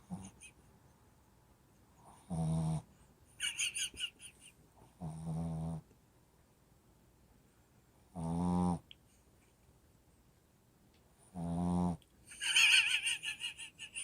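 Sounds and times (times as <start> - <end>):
pet snoring: 2.1 - 2.9, 5.0 - 5.8, 8.1 - 8.8, 11.3 - 12.0.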